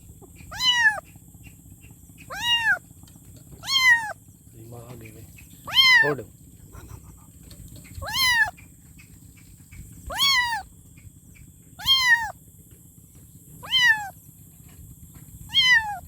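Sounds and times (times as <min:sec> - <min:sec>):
kitten meowing: 0:00.3 - 0:01.0, 0:02.3 - 0:02.8, 0:03.6 - 0:04.2, 0:05.7 - 0:06.2, 0:08.0 - 0:08.5, 0:10.1 - 0:10.7, 0:11.8 - 0:12.4, 0:13.6 - 0:14.2, 0:15.5 - 0:16.0.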